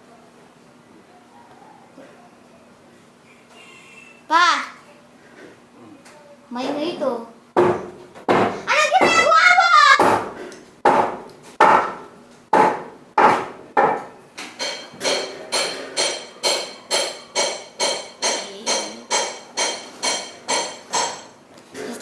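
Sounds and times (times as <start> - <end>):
knocks on a hard object: 7.6 - 9.2, 10.0 - 21.2.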